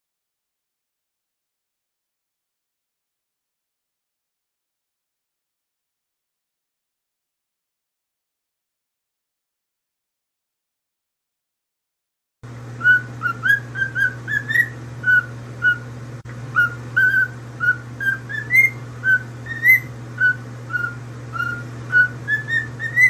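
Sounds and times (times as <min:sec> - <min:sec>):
steady low hum: 0:12.4 - 0:23.0
parrot whistling short notes: 0:12.8 - 0:15.8, 0:16.5 - 0:23.0.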